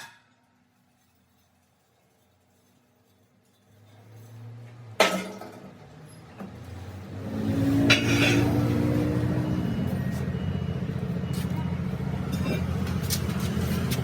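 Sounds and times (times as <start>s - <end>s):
engine running: 5.7s - 14.0s.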